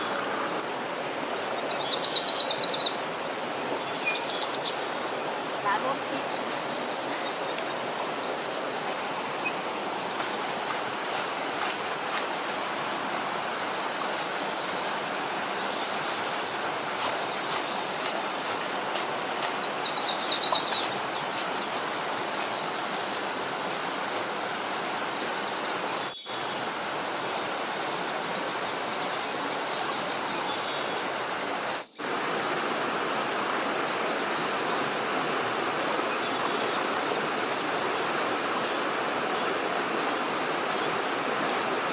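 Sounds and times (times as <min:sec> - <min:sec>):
stream water rushing: 0:00.0 - 0:41.9.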